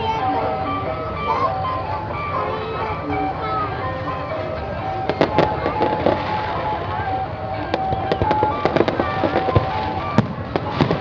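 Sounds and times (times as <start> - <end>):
music playing: 0.0 - 11.0
fireworks bangs and crackles: 4.8 - 11.0.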